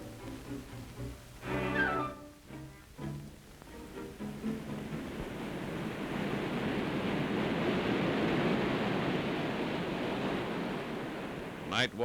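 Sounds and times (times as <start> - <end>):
waves washing: 3.4 - 12.0.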